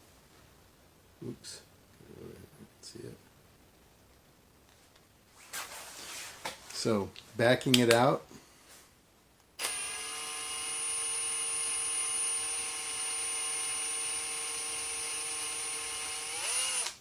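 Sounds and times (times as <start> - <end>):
drill motor whine: 9.6 - 17.0.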